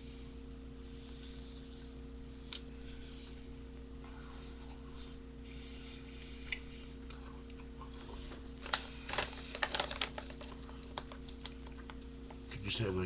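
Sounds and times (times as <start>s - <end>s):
steady electrical hum: 0.0s - 13.0s.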